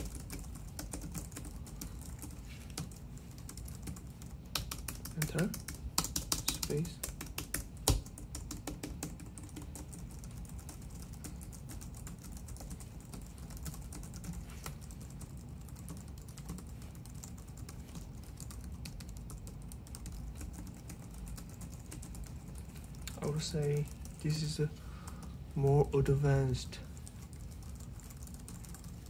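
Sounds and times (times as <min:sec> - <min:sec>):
fast typing on keyboard: 0:00.0 - 0:29.0.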